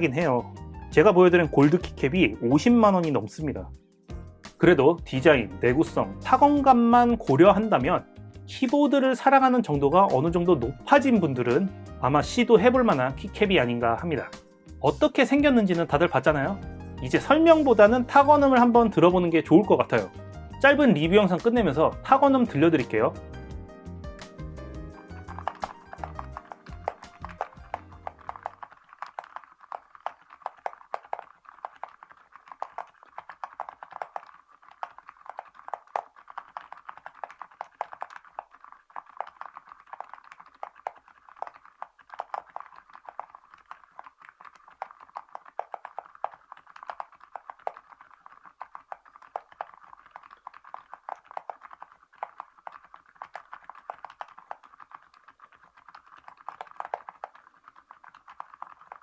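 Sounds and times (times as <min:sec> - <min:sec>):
mechanical keyboard typing: 0:24.2 - 0:59.0.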